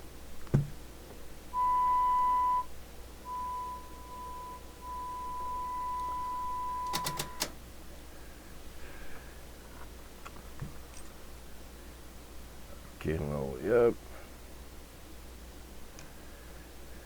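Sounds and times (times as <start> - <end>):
pure audio test tone: 1.5 - 7.5.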